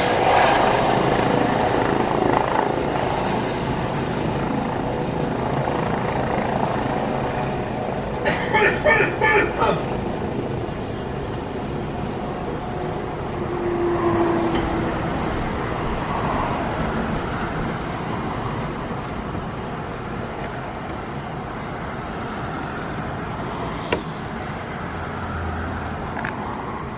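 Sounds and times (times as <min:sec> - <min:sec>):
helicopter running: 0:00.0 - 0:26.9.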